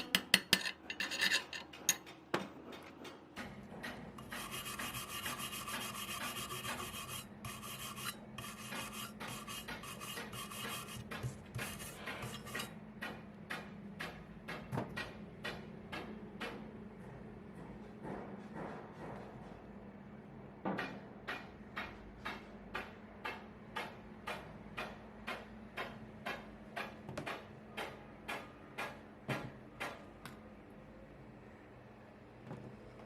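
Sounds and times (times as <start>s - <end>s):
rasping scraping strokes: 4.2s - 12.8s.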